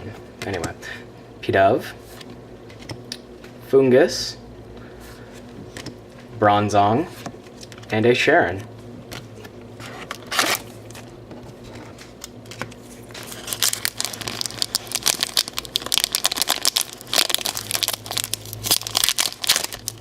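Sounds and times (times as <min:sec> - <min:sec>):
foil wrapper crinkling and tearing: 0:12.0 - 0:20.0.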